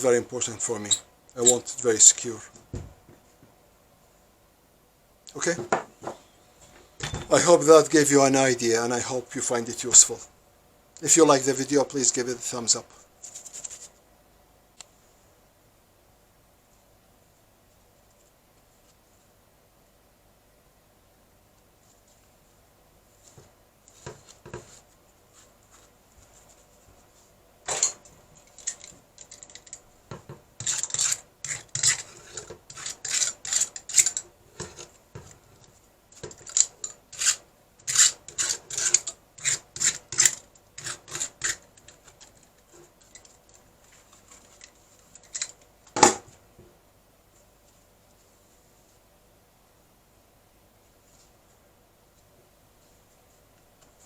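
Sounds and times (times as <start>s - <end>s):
hard objects scraping and clicking: 27.7s - 45.7s.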